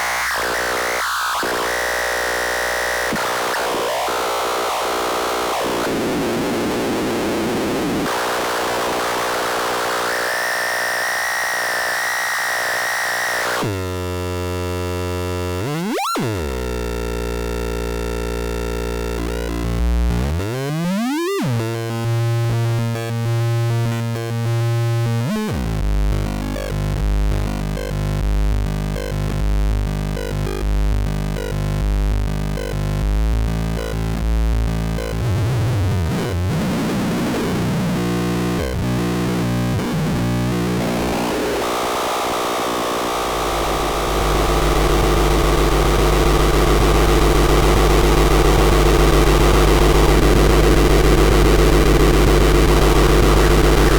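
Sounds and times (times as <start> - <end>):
electronic noise music: 36.7 - 53.9.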